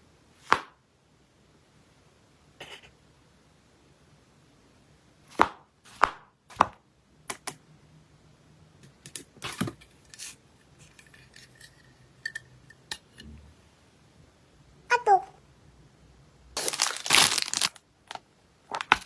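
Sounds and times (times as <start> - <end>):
packaging knocks and clicks: 16.6 - 19.0
packaging rustling: 16.6 - 19.0.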